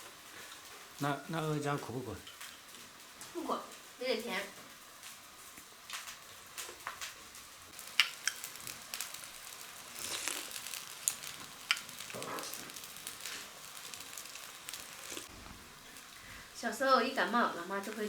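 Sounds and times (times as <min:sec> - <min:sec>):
soft eating sounds: 0:05.0 - 0:16.6.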